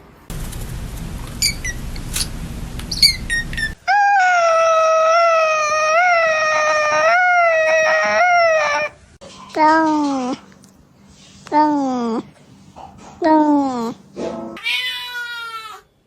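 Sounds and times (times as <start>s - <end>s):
cat yowling: 3.7s - 9.0s, 14.6s - 15.8s.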